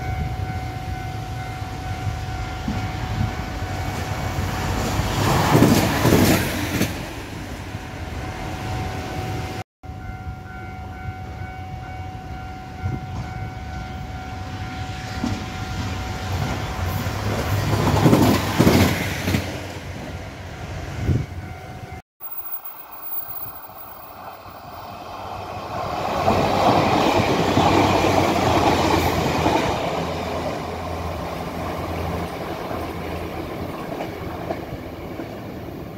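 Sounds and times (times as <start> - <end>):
track stabilizer engine and wheels: 22.2 - 25.4
track inspection cars passing: 22.2 - 35.9.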